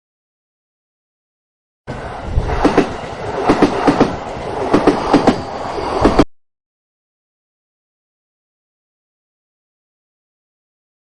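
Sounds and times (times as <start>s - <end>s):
sharp clacks: 2.6s - 5.4s.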